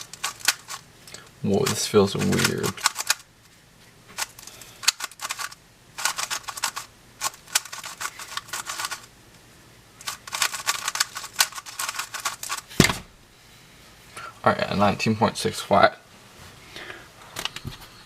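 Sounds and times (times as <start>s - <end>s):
puzzle cube clicking turns: 0.0s - 3.3s, 4.2s - 9.1s, 10.0s - 12.7s.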